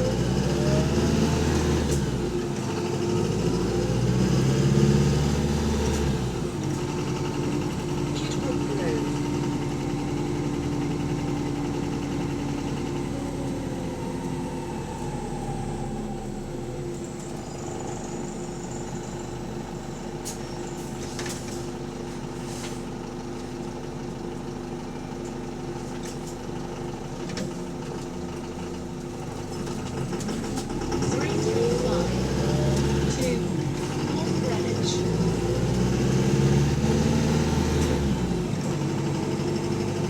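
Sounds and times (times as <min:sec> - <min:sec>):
bus engine with knock: 0:20.2 - 0:24.6, 0:25.2 - 0:40.0.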